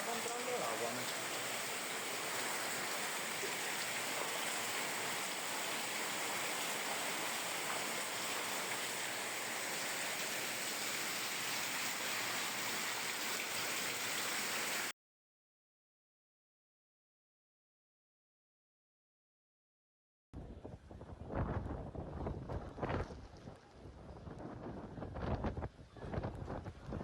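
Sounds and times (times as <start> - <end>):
hurricane wind: 0.0 - 12.3, 20.4 - 27.0
driving rain: 0.0 - 14.9.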